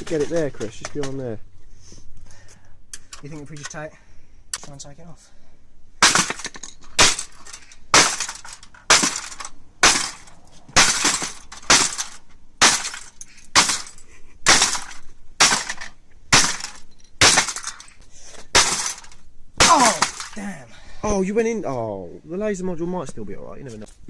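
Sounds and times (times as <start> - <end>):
hard blows cracking plastic casing: 6.0 - 20.4.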